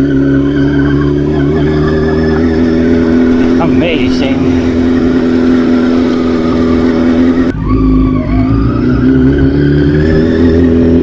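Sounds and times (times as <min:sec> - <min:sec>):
motorcycle engine revving: 0:00.0 - 0:11.0
wind rumble: 0:00.0 - 0:11.0.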